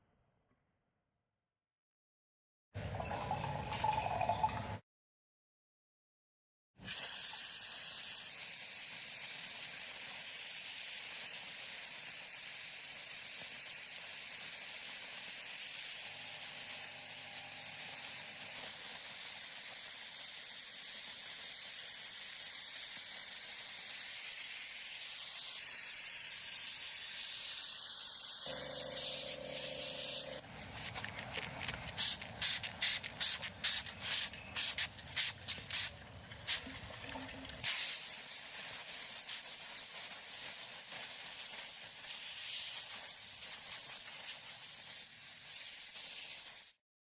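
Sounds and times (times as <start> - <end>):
high hiss of spraying: 6.8 - 30.9, 31.9 - 35.9, 37.6 - 46.8.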